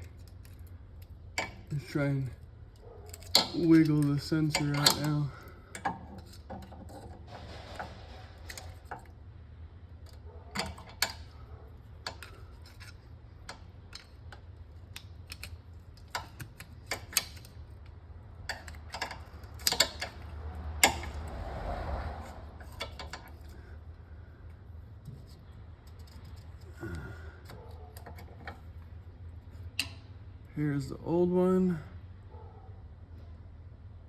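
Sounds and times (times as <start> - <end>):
steady low hum: 0.0 - 34.0
metal pick clicking and tapping: 29.7 - 30.0.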